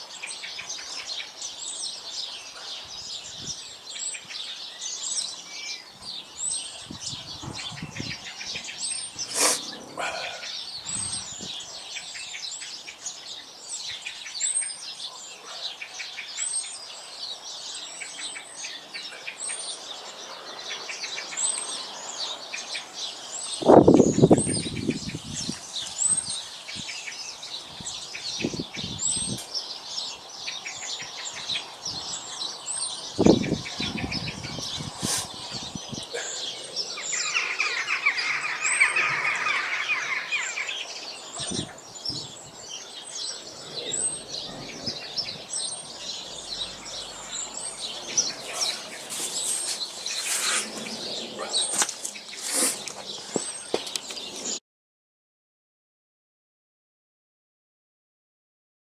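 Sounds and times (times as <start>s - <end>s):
birds singing and chirping: 0.0s - 54.6s
bird trill: 20.8s - 54.6s.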